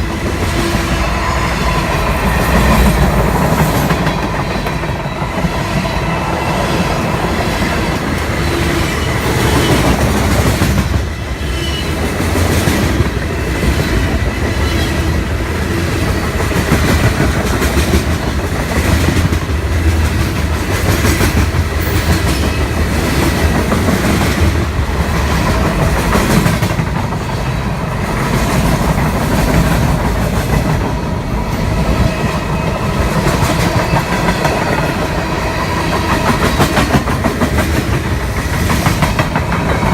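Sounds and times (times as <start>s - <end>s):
train rolling rumble: 0.0s - 39.9s
train wheels clacking on rails: 0.0s - 39.9s.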